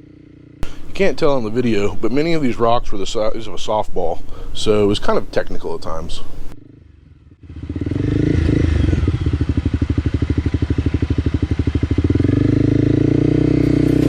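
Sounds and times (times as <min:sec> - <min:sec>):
motorcycle engine running: 0:00.0 - 0:02.0, 0:06.4 - 0:14.0.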